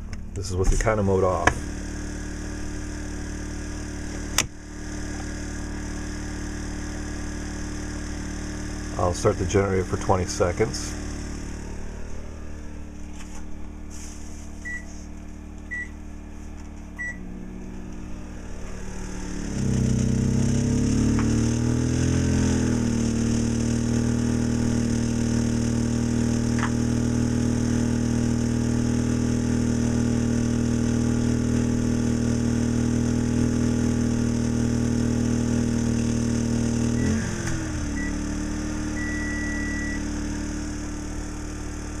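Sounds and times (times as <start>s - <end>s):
generator engine running: 0.0s - 42.0s
microwave oven running: 11.0s - 21.9s, 36.8s - 42.0s
microwave beeps: 14.6s - 15.0s, 15.7s - 16.0s, 17.0s - 17.3s, 37.9s - 38.2s, 38.9s - 40.1s
keypad beeps: 15.7s - 15.9s, 17.0s - 17.2s.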